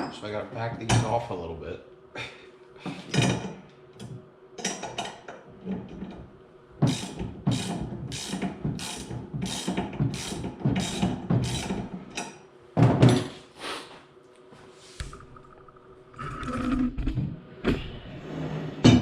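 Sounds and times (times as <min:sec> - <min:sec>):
ratchet wrench clicking: 0:07.0 - 0:11.8.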